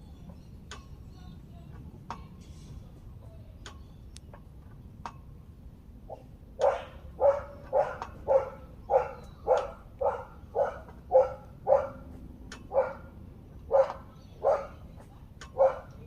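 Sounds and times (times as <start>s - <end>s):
dog barking: 6.1s - 12.1s, 12.7s - 13.1s, 13.7s - 14.8s, 15.6s - 16.0s.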